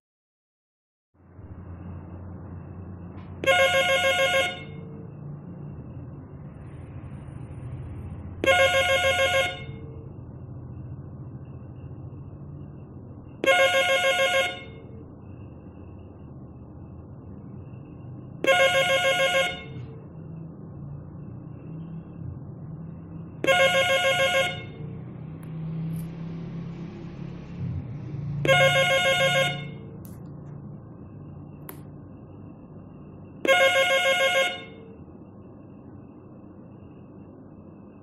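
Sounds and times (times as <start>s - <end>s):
faint low rumble: 4.8s - 8.5s, 24.8s - 28.7s.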